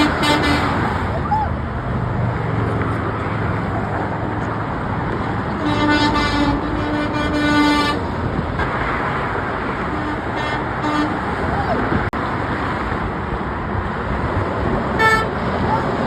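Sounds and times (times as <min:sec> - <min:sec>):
truck horn honking: 0:00.0 - 0:01.1, 0:05.5 - 0:08.2, 0:09.8 - 0:11.5, 0:15.0 - 0:15.5
freeway traffic noise: 0:00.0 - 0:16.0.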